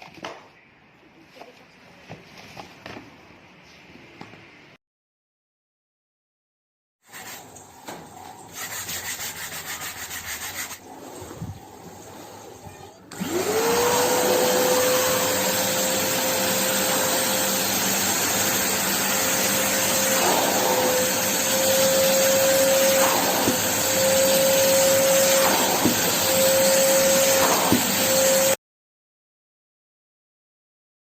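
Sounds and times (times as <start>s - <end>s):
vacuum cleaner motor whine: 13.1s - 28.6s.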